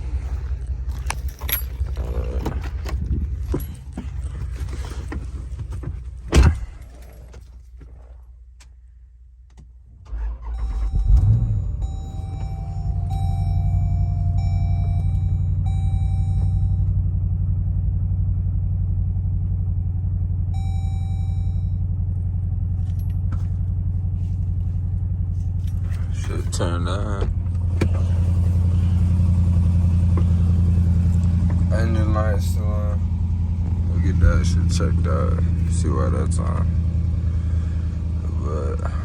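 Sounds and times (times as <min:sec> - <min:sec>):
car engine cranking and idling: 0:00.0 - 0:39.0
dashboard warning chimes: 0:10.4 - 0:16.9, 0:20.5 - 0:21.8.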